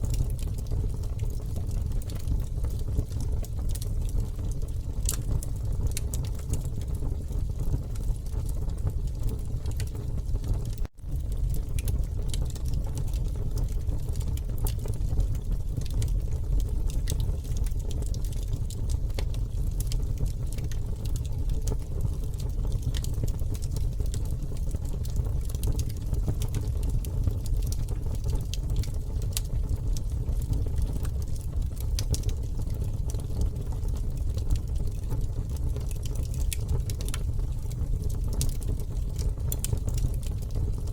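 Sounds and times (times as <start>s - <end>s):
campfire crackling and popping: 0.0s - 40.9s
low fire rumble: 0.0s - 40.9s.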